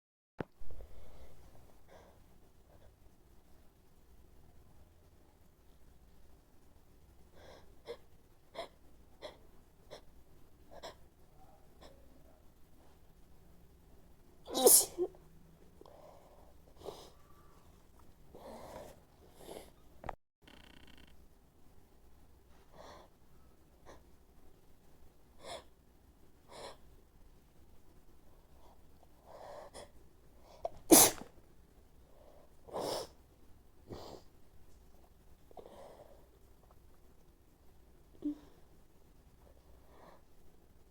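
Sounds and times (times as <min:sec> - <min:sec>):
woman sneezing: 0:14.5 - 0:15.1.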